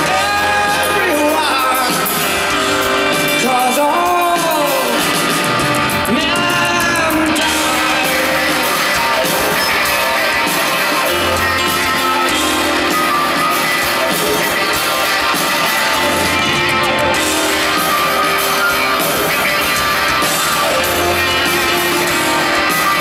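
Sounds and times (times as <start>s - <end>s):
man singing: 0.0s - 2.6s, 3.3s - 5.3s, 6.0s - 11.4s
live pop-rock band playing: 0.0s - 23.0s.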